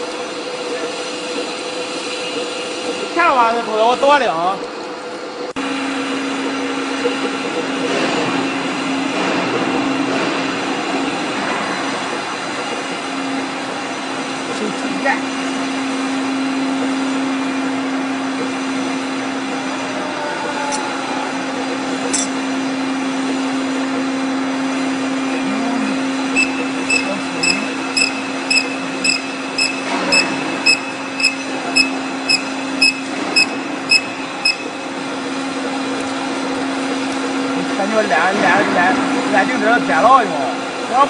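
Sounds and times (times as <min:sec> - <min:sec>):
short high-pitched pips: 0:26.4 - 0:34.8.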